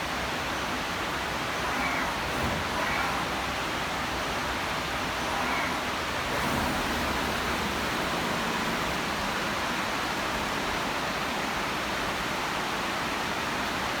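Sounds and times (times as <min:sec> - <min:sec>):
industrial machine rushing noise: 0:00.9 - 0:10.6.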